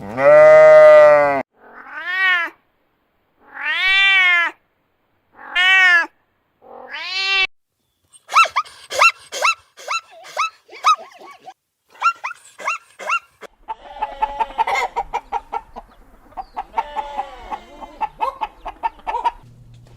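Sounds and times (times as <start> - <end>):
loud bleat: 0.0 - 2.4, 13.7 - 14.9, 16.7 - 18.0
cat meowing: 6.7 - 7.5
short sharp yelps: 8.2 - 15.0.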